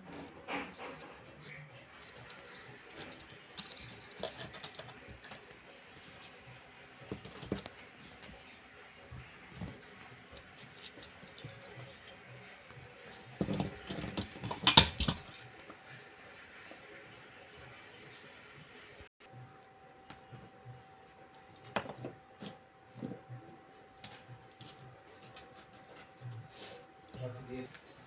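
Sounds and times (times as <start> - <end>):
knocking and clattering: 13.4 - 15.4.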